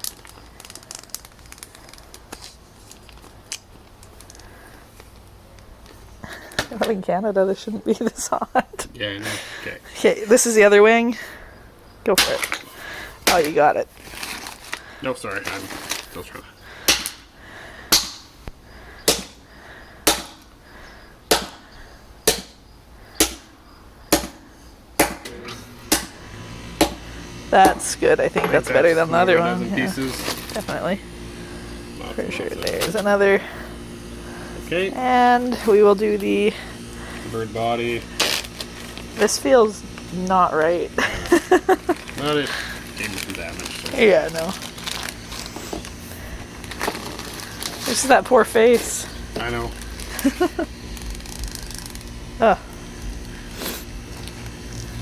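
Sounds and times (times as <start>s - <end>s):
broken pieces shifting in bag: 0.0s - 4.5s, 13.9s - 14.8s, 15.4s - 16.2s, 41.2s - 46.0s, 46.6s - 48.9s
plastic bag crackling: 0.0s - 5.8s, 13.4s - 16.4s, 28.6s - 31.3s, 36.8s - 40.1s, 41.2s - 55.0s.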